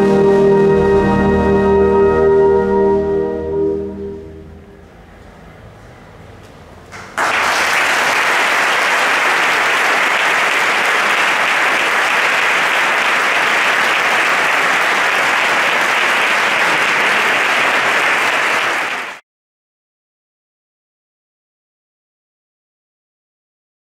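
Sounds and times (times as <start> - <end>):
audience applauding: 7.0 - 19.2.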